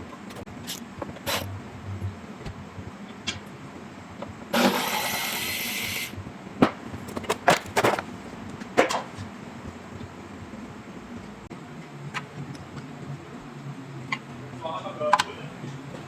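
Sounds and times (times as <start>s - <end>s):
power tool running: 4.5s - 6.2s.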